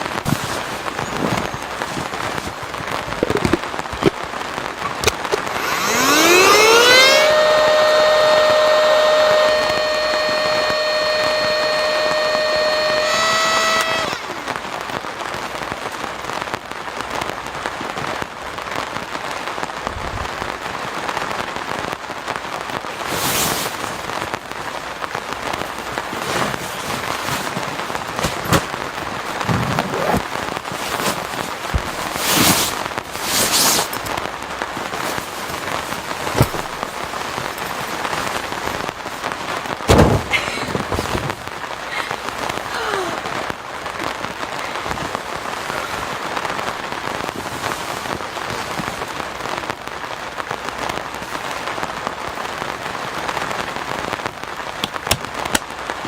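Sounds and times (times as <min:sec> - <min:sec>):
short rustles: 0:00.0 - 0:03.7, 0:25.5 - 0:39.1
heavy rain falling: 0:00.0 - 0:56.0.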